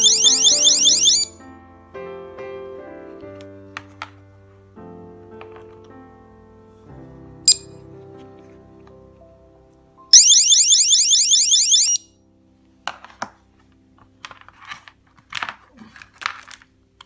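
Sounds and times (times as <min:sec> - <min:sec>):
electronic alarm whooping: 0:00.0 - 0:01.4, 0:10.2 - 0:12.0
background music: 0:00.0 - 0:14.0
short high beep: 0:10.2 - 0:12.0.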